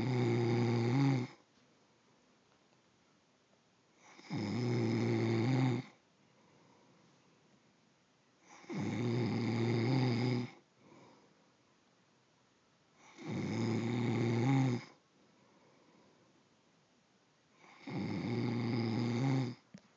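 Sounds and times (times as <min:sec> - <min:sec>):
man snoring: 0:00.0 - 0:01.4, 0:04.0 - 0:06.0, 0:08.5 - 0:10.6, 0:13.0 - 0:15.0, 0:17.6 - 0:19.6
quiet breathing: 0:03.9 - 0:12.0, 0:12.9 - 0:16.6.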